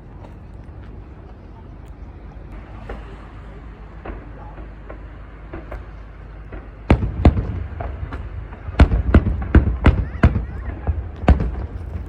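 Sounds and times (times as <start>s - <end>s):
fireworks bangs and pops: 2.6s - 12.0s.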